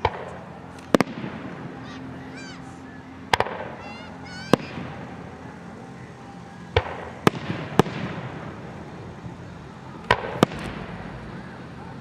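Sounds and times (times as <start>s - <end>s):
firework sharp bangs: 0.0s - 2.1s, 3.3s - 5.4s, 6.7s - 9.1s, 10.0s - 12.0s
firework crackling trail: 0.0s - 12.0s
firework rising whistle: 0.9s - 12.0s.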